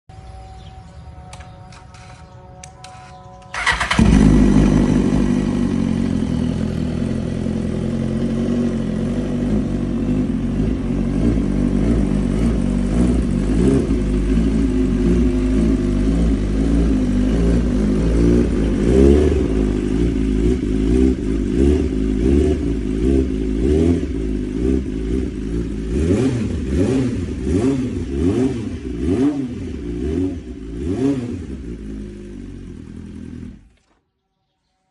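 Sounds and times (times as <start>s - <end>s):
motorcycle engine revving: 1.3s - 34.0s
motorcycle engine idling: 3.5s - 28.2s, 31.4s - 33.8s.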